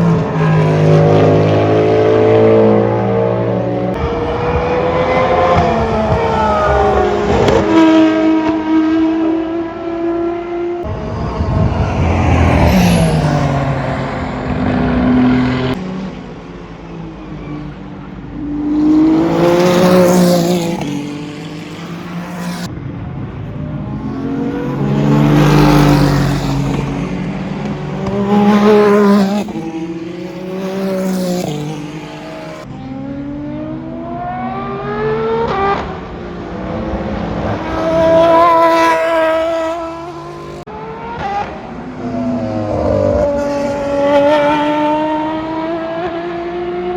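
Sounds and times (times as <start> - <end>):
race cars passing at speed: 0.0 - 46.9.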